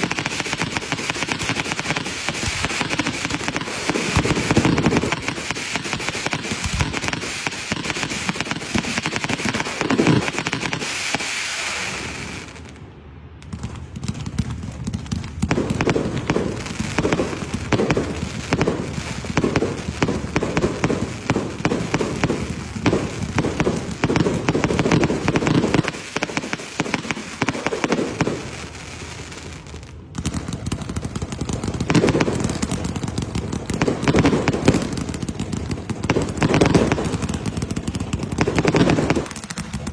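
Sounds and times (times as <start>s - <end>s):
steady hiss: 0.0s - 12.9s, 15.7s - 30.0s
firecrackers crackling: 0.0s - 39.9s.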